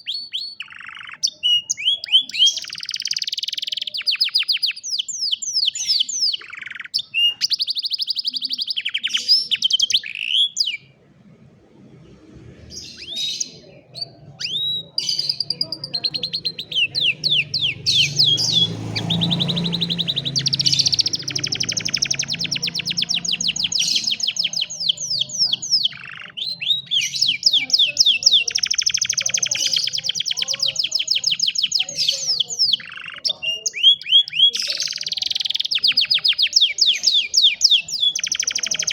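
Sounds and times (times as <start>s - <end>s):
canary singing trills: 0.0s - 38.9s
faint low rumble: 10.8s - 16.7s.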